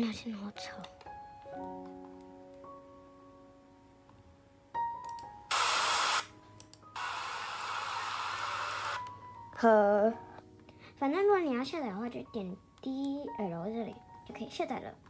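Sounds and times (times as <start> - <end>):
loud hiss: 5.5 - 6.3.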